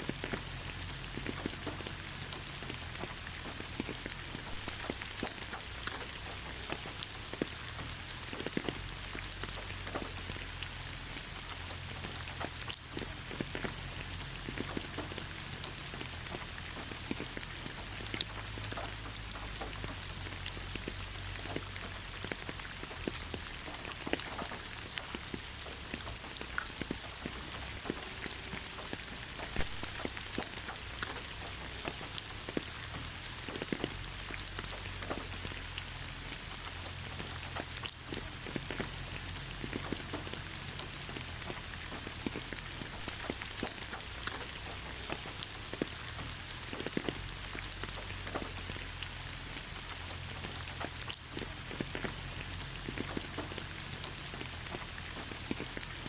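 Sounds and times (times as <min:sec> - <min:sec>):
rain hissing: 0:00.0 - 0:56.0
raindrops ticking: 0:00.0 - 0:56.0.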